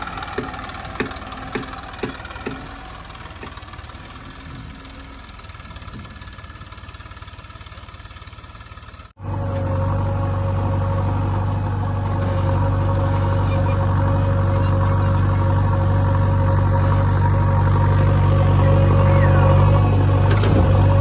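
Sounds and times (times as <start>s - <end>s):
diesel engine running: 0.0s - 21.0s.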